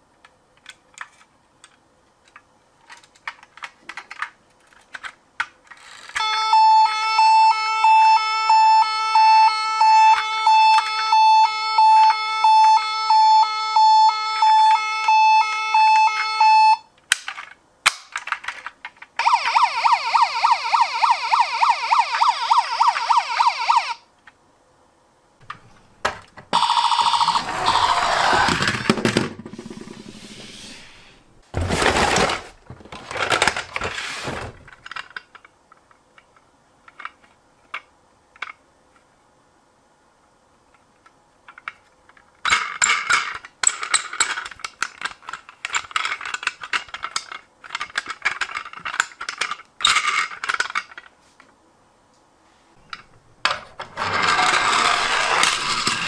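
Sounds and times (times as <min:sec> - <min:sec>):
toy warbling siren: 0:06.2 - 0:16.8, 0:19.2 - 0:24.0, 0:26.6 - 0:28.6, 0:54.1 - 0:56.0.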